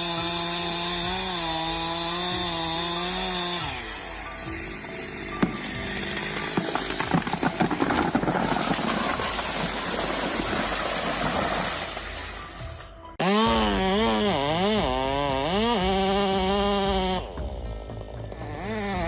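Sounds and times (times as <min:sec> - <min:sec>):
chainsaw engine running: 0:00.0 - 0:11.6, 0:13.2 - 0:19.0
wood cracking and snapping: 0:05.4 - 0:12.2.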